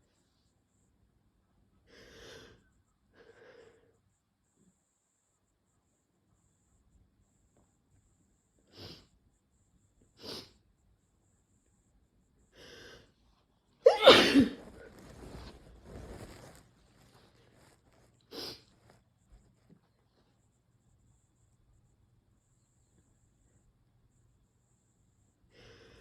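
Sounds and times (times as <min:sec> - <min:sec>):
person sniffing: 0:08.7 - 0:09.1, 0:10.2 - 0:10.6, 0:17.7 - 0:19.0
person sneezing: 0:13.8 - 0:15.3.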